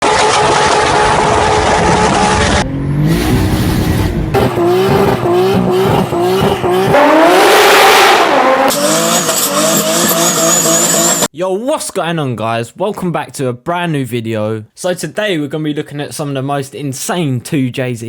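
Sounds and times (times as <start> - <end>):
turbocharged engine revving: 0.3 - 11.3.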